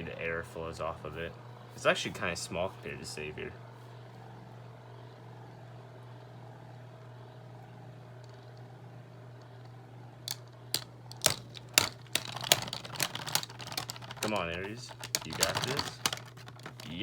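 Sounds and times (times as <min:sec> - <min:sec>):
spinning tops whirring: 0:08.1 - 0:17.0
spinning tops clashing clicks: 0:10.3 - 0:17.0.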